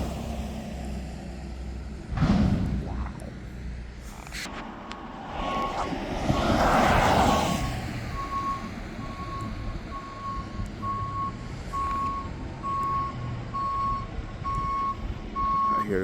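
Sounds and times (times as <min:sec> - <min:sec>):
diesel engine running: 0:00.0 - 0:04.9
passing traffic rush: 0:00.0 - 0:16.0
truck back-up alarm beeping: 0:07.4 - 0:16.0.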